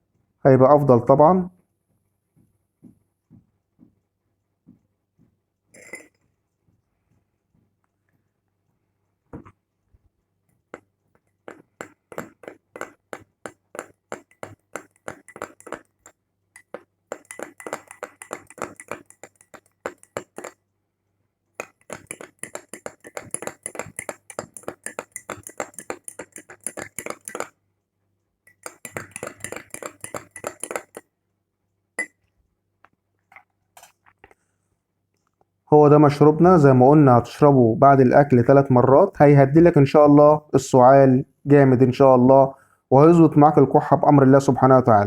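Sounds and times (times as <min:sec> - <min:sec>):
spoon clinking in a cup: 0:05.8 - 0:06.2, 0:11.5 - 0:20.6, 0:21.6 - 0:27.5, 0:28.5 - 0:31.0, 0:32.0 - 0:32.2.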